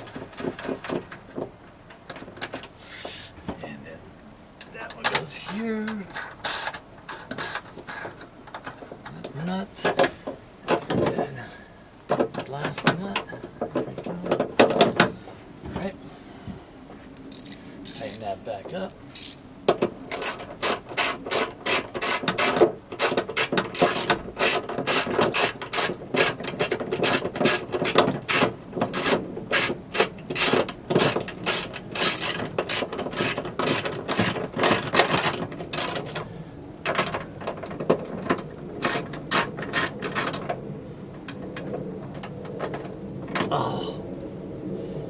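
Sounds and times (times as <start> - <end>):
ratchet clicking: 17.3 - 18.2, 19.2 - 19.4, 20.1 - 36.2, 38.8 - 40.4.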